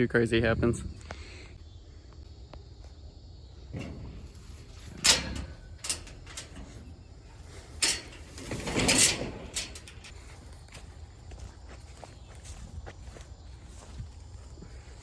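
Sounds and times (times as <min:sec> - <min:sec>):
metal gate clanking: 0:03.7 - 0:10.2
metal gate rattling scrape: 0:03.7 - 0:10.3.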